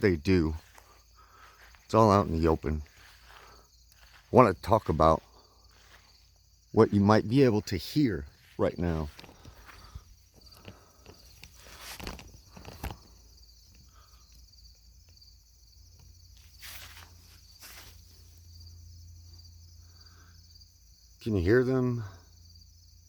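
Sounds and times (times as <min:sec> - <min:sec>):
footsteps rustling: 0:00.0 - 0:13.3, 0:16.3 - 0:18.5
crickets chirping: 0:00.0 - 0:23.0.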